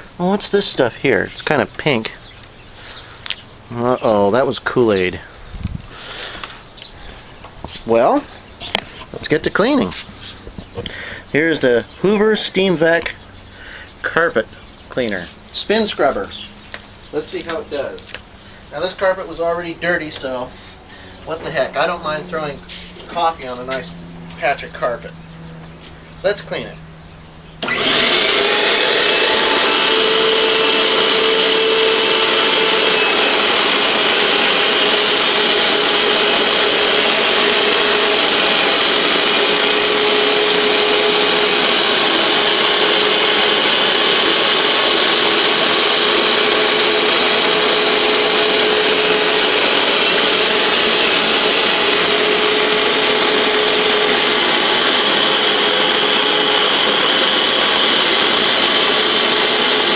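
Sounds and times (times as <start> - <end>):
carpet cleaner motor whining: 27.6 - 59.9.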